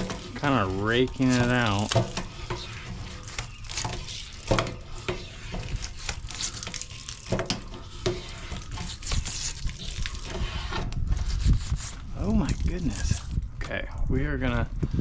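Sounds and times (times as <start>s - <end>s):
tool scraping gritty scale in tank: 0.0s - 13.4s.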